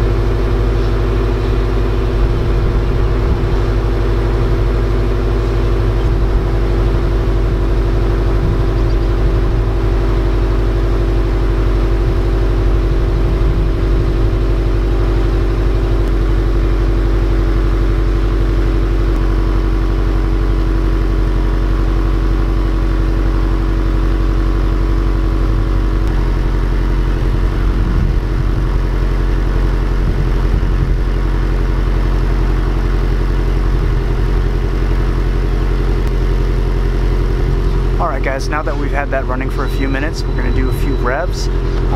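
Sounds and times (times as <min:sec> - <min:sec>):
car engine idling: 0:00.0 - 0:41.9.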